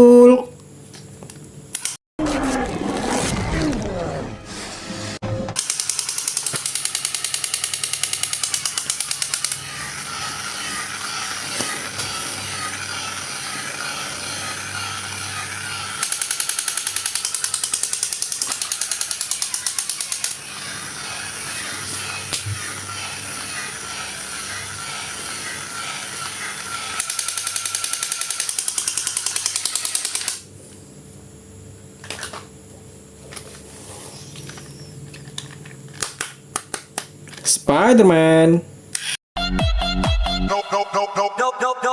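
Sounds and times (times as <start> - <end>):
small motor and gears clicking: 1.7 - 2.0, 5.6 - 30.5.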